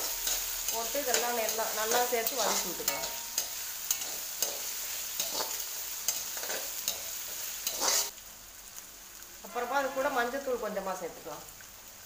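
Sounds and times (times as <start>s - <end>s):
ladle scraping a pan: 0.0s - 8.1s
vegetables sizzling in oil: 0.0s - 12.0s.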